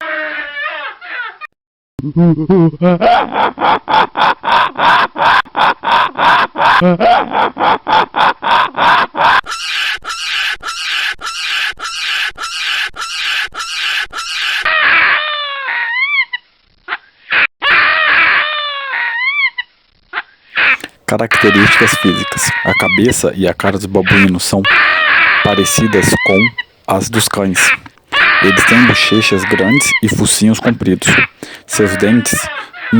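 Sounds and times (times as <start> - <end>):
baboons calling: 0.0 - 1.4, 8.5 - 32.9
baboon screams: 0.0 - 1.5, 8.4 - 32.9.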